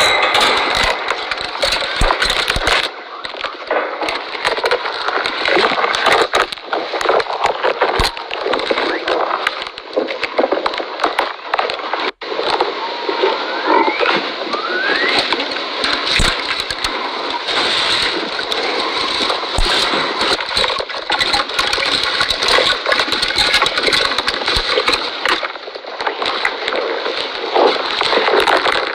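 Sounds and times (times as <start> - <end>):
camel chewing wet crunching: 15.0 - 25.4, 26.0 - 28.9.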